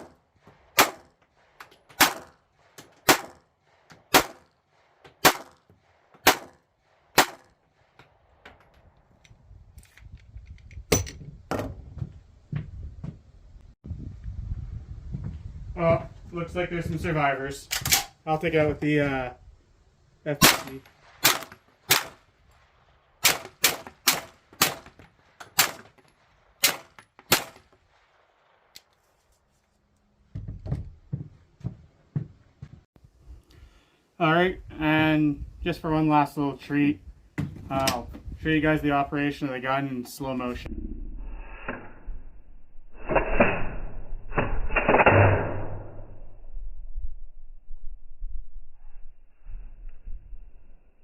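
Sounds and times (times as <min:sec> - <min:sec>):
carbine gunshots: 0:00.0 - 0:08.4, 0:20.4 - 0:22.3, 0:23.2 - 0:27.8
slowed-down gunshots: 0:00.0 - 0:08.9, 0:42.9 - 0:46.4.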